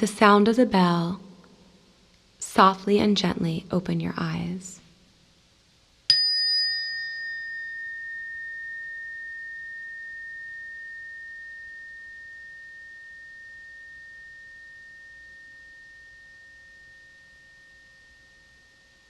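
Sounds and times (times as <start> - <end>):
meditation bell ringing: 6.1 - 19.0.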